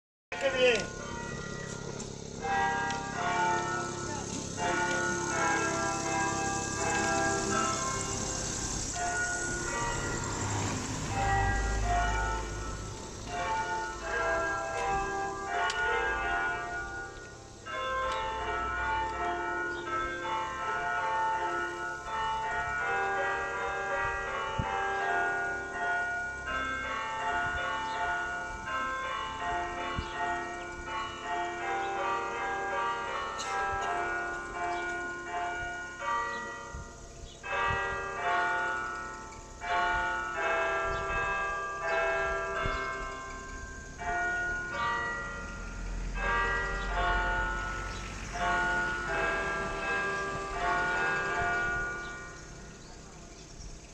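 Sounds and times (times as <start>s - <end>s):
church bells ringing: 0.3s - 53.9s.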